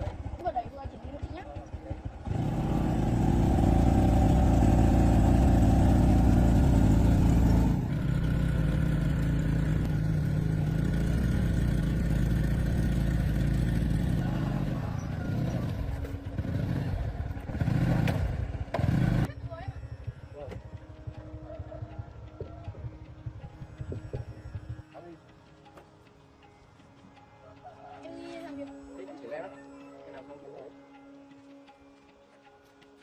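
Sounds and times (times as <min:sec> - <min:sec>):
engine running steadily: 0:00.0 - 0:27.1.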